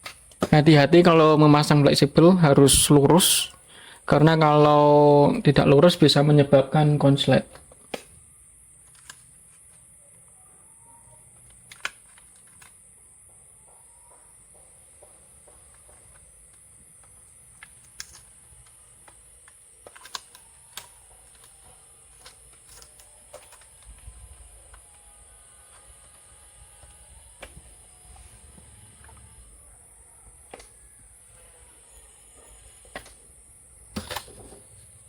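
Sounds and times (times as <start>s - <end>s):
small laptop parts clicking: 7.4s - 13.0s, 13.8s - 35.0s.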